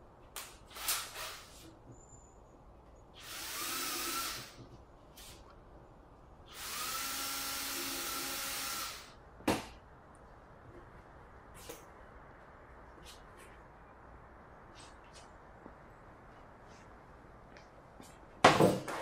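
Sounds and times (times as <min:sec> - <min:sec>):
power drill whining: 0:03.2 - 0:04.6, 0:06.5 - 0:09.1.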